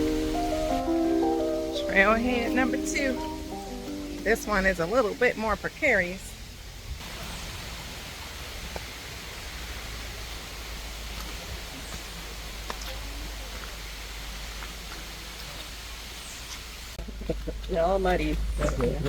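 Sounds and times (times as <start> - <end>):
constant low rumble: 16.8 - 19.0.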